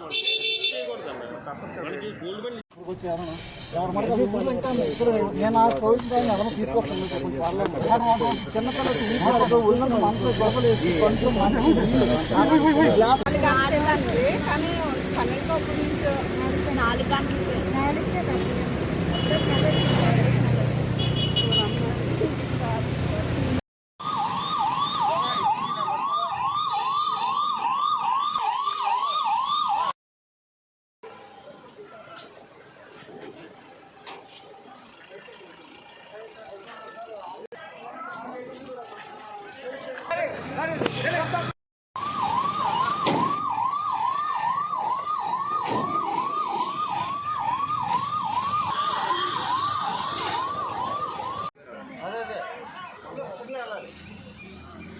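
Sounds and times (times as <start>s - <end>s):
emergency siren yelp: 3.2s - 13.2s, 24.0s - 30.0s, 42.0s - 51.6s.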